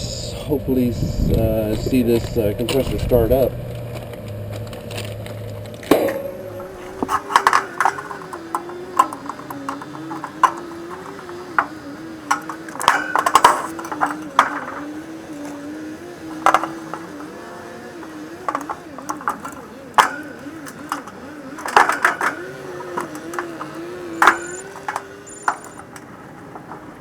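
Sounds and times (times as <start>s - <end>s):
hand tools clinking on metal parts: 5.7s - 27.0s.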